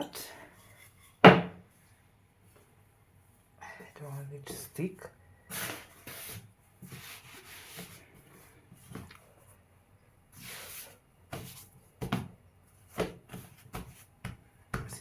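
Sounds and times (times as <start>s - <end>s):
hands rubbing dough: 5.5s - 9.7s, 10.3s - 15.0s.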